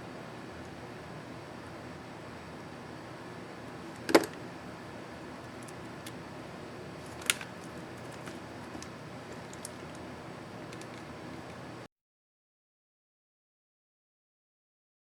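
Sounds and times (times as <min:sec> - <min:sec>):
plastic keycap snapping: 0:07.1 - 0:09.8.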